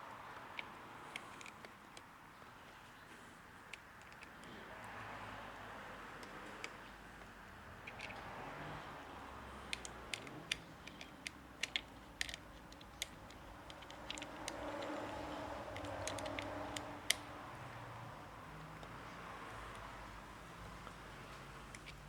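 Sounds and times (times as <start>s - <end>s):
socket and screws clicking on metal: 0.4s - 2.8s, 3.7s - 5.0s, 7.8s - 8.7s, 9.5s - 17.3s, 21.6s - 22.0s.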